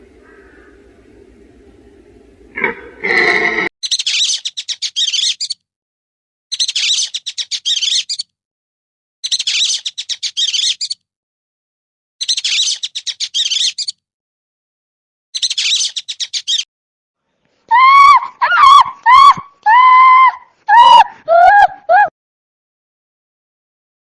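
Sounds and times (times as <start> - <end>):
bird chirping rapidly: 3.8 - 5.6, 6.5 - 8.3, 9.2 - 11.0, 12.2 - 14.0, 15.4 - 16.6.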